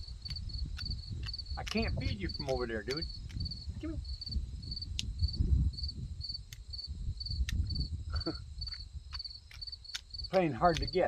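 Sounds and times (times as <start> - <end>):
low rumble: 0.0 - 9.2
cricket chirping: 0.0 - 11.0
sharp ticks: 0.2 - 3.6, 4.8 - 5.3, 6.4 - 7.8, 8.6 - 11.0.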